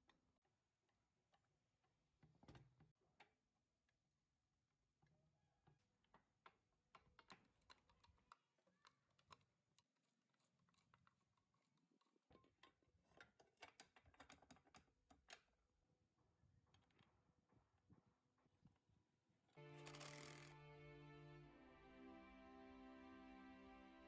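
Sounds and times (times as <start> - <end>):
faint small clicks and taps: 6.1 - 15.5.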